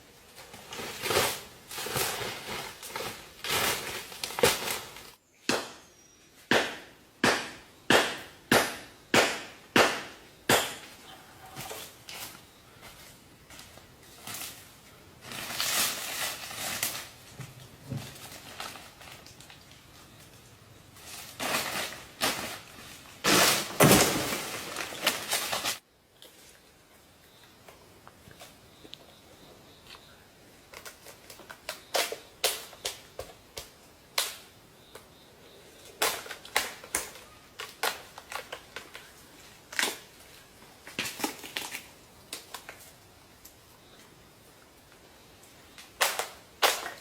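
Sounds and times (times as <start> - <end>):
loud rustling and crunching: 0.3 - 5.2, 21.0 - 25.8
sharp knocks and cracks: 0.8 - 11.0, 23.2 - 25.8, 30.7 - 35.1, 35.9 - 39.0, 45.8 - 47.0.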